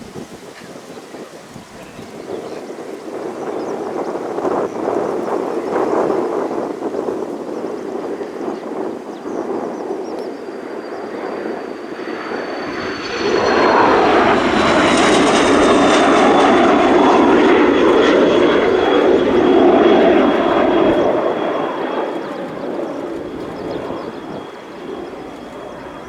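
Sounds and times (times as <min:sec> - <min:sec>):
military jet passing low: 0:00.0 - 0:26.0.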